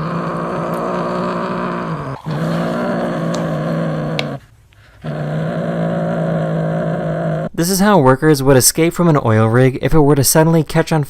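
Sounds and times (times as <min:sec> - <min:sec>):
cat growling: 0:00.0 - 0:07.6.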